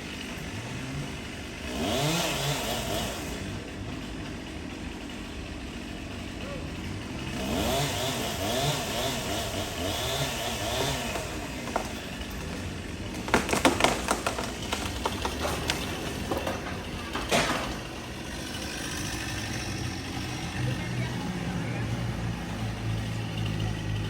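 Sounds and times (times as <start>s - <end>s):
small engine revving: 0.0s - 4.0s, 6.3s - 16.9s, 17.5s - 24.0s
sharp cracks and knocks: 10.6s - 18.3s.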